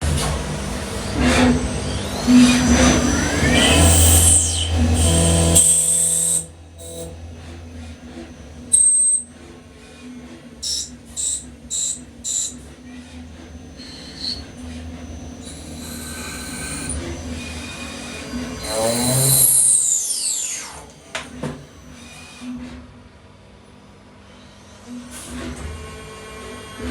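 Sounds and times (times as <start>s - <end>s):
lathe spindle running and cutting: 0.8s - 21.2s
spindle whine changing speed: 1.6s - 21.0s
high metallic squeals: 2.3s - 9.4s, 13.4s - 20.6s.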